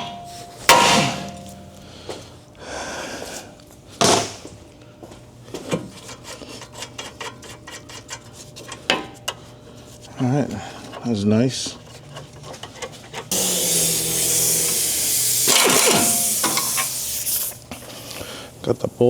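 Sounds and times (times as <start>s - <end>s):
hammer striking metal: 0.0s - 1.8s.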